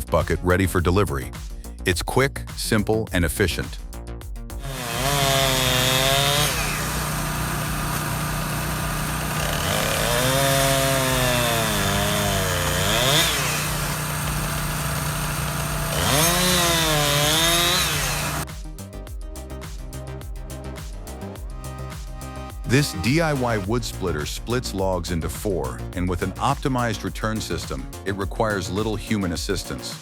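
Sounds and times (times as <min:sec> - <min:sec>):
chainsaw cutting logs: 0:04.6 - 0:18.4.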